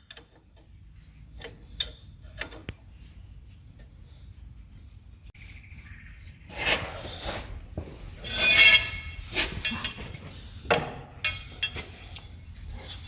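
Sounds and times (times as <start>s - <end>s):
shrill squeak: 8.2s - 9.3s
tools clinking on metal bolts: 8.2s - 10.1s, 10.7s - 12.2s.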